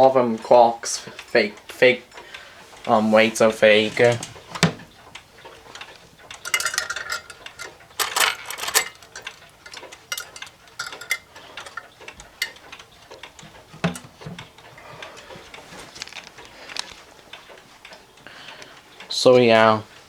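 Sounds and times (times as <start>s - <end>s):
metallic clicks of clock parts: 4.0s - 19.2s.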